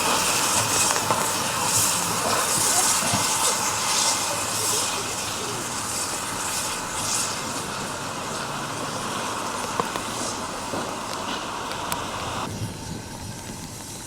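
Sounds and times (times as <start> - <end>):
soft exhaust puffs: 0.0 - 14.0
steam locomotive hissing: 0.0 - 14.0.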